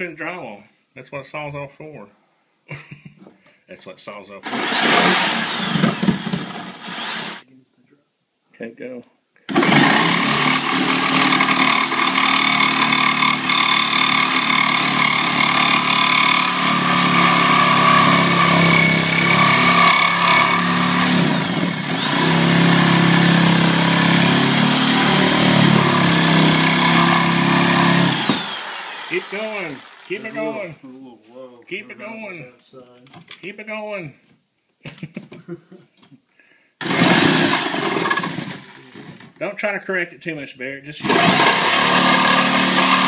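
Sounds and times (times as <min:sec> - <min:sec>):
reciprocating saw cutting drywall: 0:04.4 - 0:07.4, 0:09.5 - 0:30.7, 0:36.8 - 0:39.4, 0:41.0 - 0:43.0.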